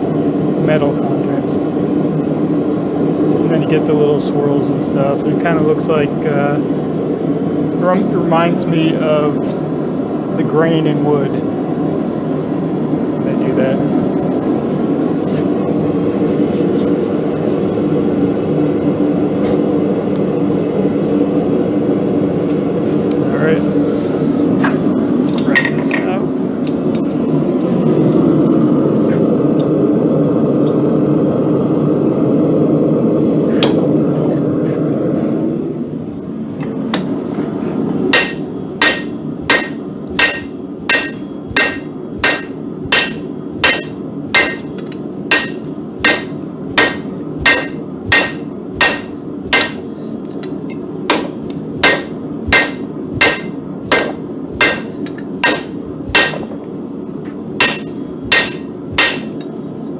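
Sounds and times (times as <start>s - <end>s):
steady rushing noise: 37.1s - 59.5s
hammer ringing on anvil: 38.2s - 50.0s, 51.1s - 56.6s, 57.6s - 59.6s.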